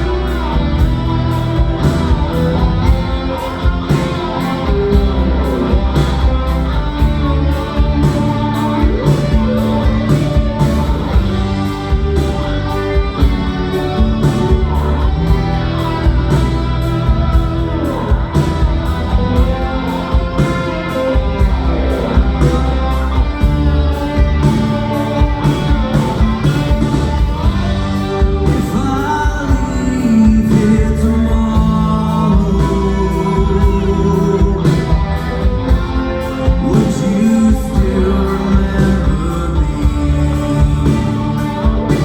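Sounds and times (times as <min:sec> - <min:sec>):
rock band playing slow song: 0:00.0 - 0:42.0
person singing: 0:17.8 - 0:42.0.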